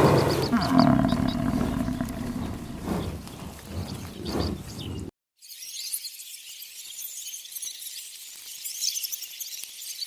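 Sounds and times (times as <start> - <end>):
low animal calls: 0.0 - 3.2.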